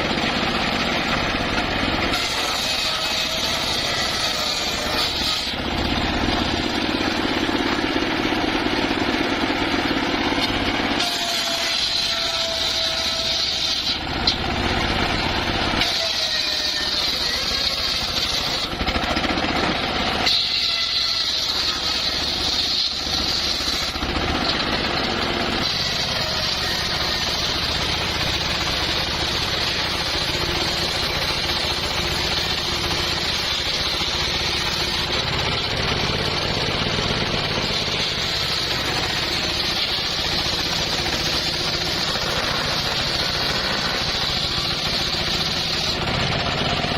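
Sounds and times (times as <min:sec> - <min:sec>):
engine-driven circular saw cutting timber: 0:00.0 - 0:46.9.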